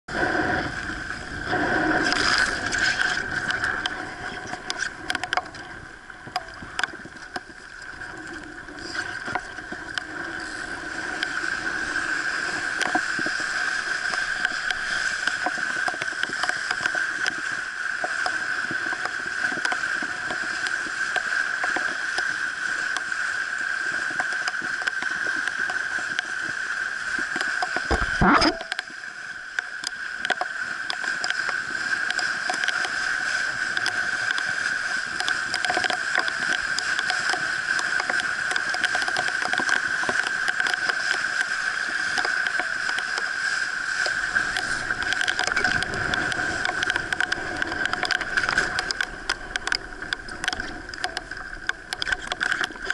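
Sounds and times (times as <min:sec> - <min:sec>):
water rushing along hull: 0:00.1 - 0:52.9
steady high-pitched tone: 0:27.9 - 0:28.8.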